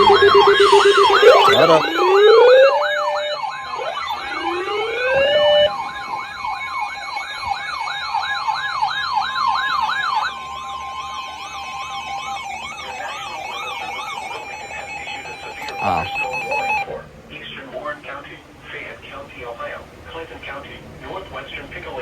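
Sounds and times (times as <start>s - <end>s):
electronic siren yelp: 0.0s - 17.0s
siren wail sweeps: 0.0s - 17.0s
steady siren tone: 0.0s - 17.0s.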